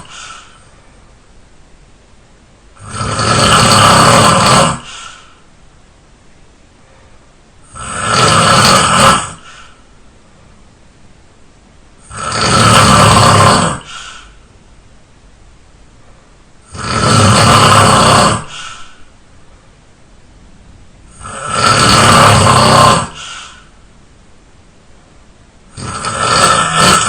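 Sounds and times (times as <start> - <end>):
man snoring loudly: 0.0 - 0.2, 2.8 - 5.1, 7.6 - 9.7, 12.0 - 14.0, 16.6 - 18.6, 21.1 - 23.2, 25.7 - 27.0.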